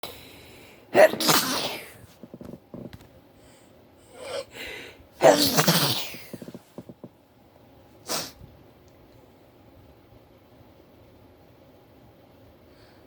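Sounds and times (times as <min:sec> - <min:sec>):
loud sneezes: 0:00.9 - 0:02.2, 0:05.2 - 0:06.6, 0:08.0 - 0:08.4.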